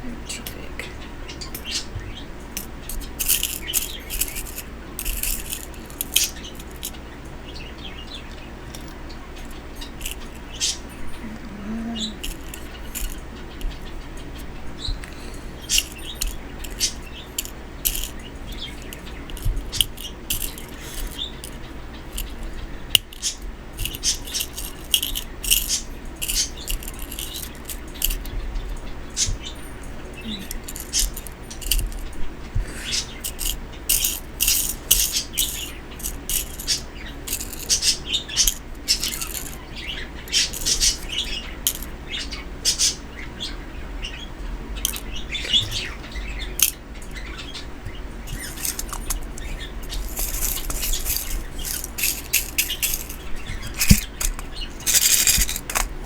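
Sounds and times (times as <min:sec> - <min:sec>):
metal pieces clicking and jingling: 0:02.5 - 0:07.0, 0:08.7 - 0:10.5, 0:12.1 - 0:28.8, 0:30.2 - 0:32.2, 0:33.0 - 0:39.6, 0:40.3 - 0:41.9, 0:44.8 - 0:45.9, 0:46.6 - 0:46.8, 0:48.3 - 0:56.0.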